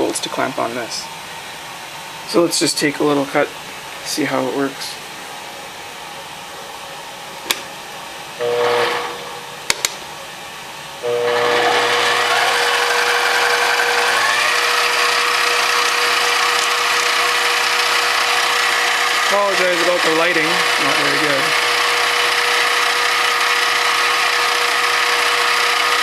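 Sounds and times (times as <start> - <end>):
lathe motor whine: 8.4 - 9.6, 11.0 - 26.0.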